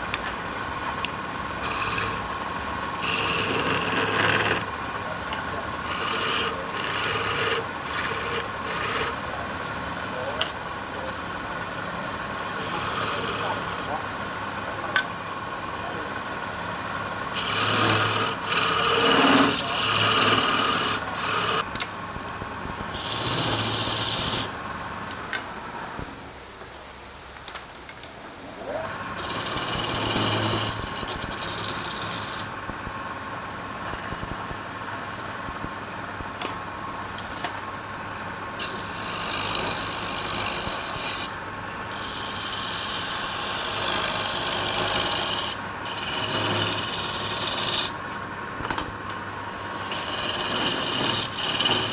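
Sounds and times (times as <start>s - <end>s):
abrasive tool scraping wood: 1.6s - 9.2s, 12.4s - 14.0s, 17.3s - 21.7s, 22.9s - 24.6s, 29.2s - 32.5s, 38.6s - 48.0s, 49.6s - 51.9s.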